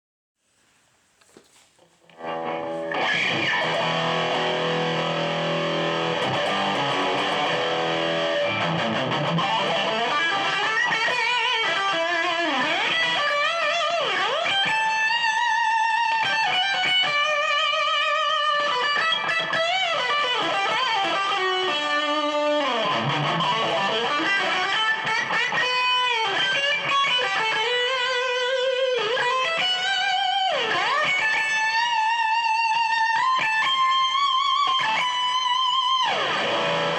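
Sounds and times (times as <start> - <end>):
distorted electric guitar: 2.0 - 36.9.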